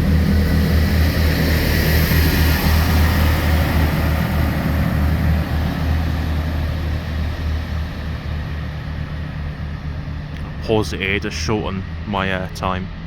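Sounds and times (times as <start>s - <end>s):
train diesel engine running: 0.0s - 13.0s.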